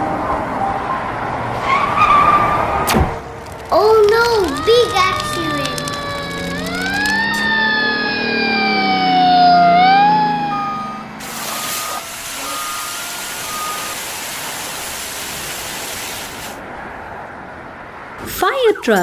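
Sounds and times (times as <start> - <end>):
cartoon siren wailing: 4.4 - 14.0
short beeps: 10.5 - 14.0
loud steady hiss: 11.2 - 16.6.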